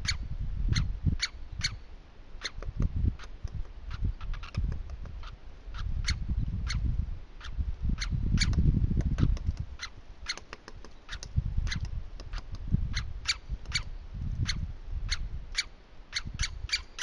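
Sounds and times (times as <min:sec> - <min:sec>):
small animal chip calls: 0:00.0 - 0:01.8, 0:02.4 - 0:17.0.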